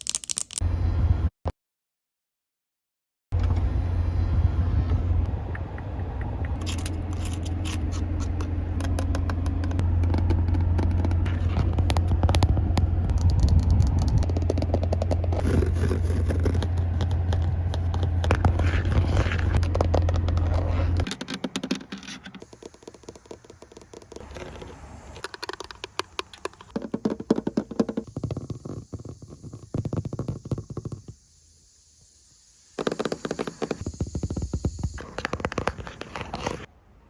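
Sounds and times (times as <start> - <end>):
steady low rumble: 0.6 - 1.3, 3.4 - 21.2
tapping and scratching: 6.6 - 31.2, 32.8 - 36.7.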